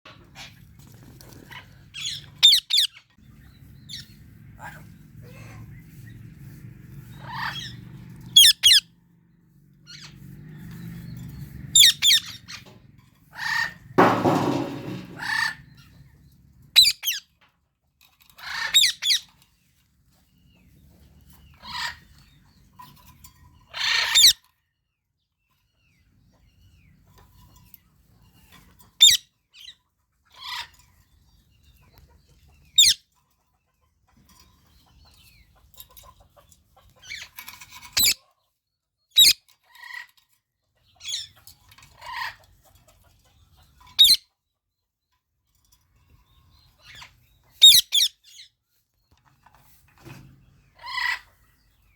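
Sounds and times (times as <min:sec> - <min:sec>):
parakeets calling: 0:07.2 - 0:08.8, 0:11.8 - 0:12.6, 0:47.6 - 0:48.1.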